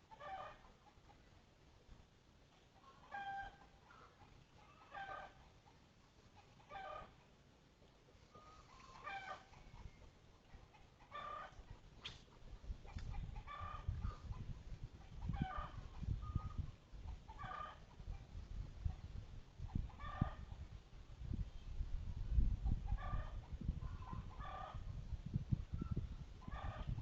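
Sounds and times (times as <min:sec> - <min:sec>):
chicken calling: 0:02.8 - 0:05.5, 0:06.4 - 0:07.2, 0:08.2 - 0:10.0.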